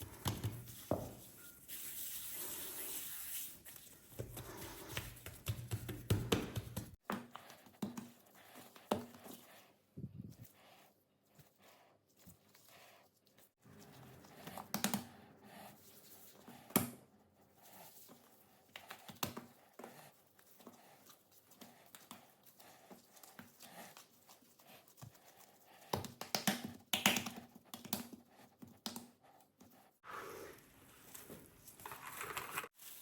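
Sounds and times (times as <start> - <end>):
crinkling and rustling: 30.9 - 33.0.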